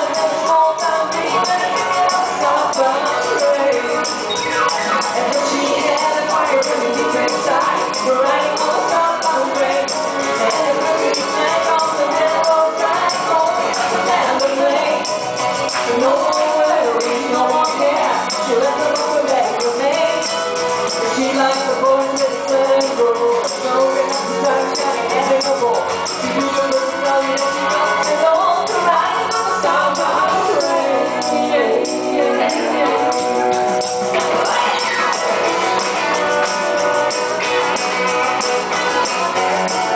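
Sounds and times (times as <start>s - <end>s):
high percussion beat: 0.0s - 39.9s
live band playing: 0.0s - 39.9s
person singing: 0.0s - 39.9s.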